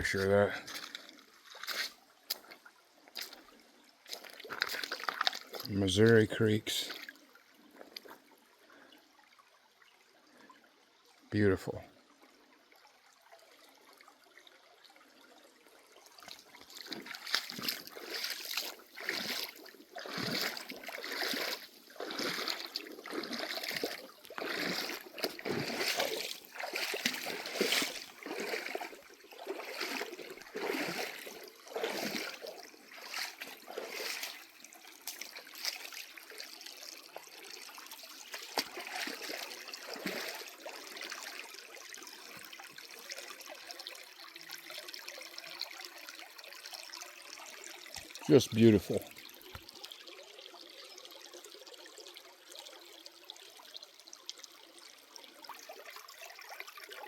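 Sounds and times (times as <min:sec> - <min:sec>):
feet splashing through creek: 0:00.0 - 0:08.4, 0:16.2 - 0:43.7
stream trickling: 0:00.0 - 0:57.0.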